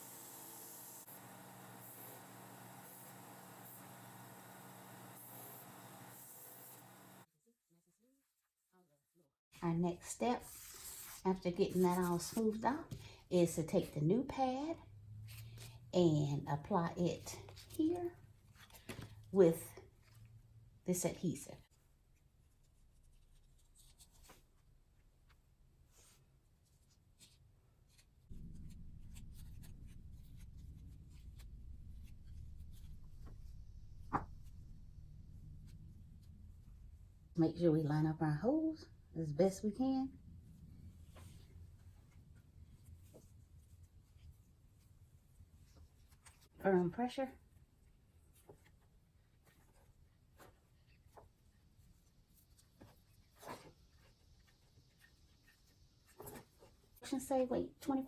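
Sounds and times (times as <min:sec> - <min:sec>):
steady low hum: 0:28.3 - 0:37.4.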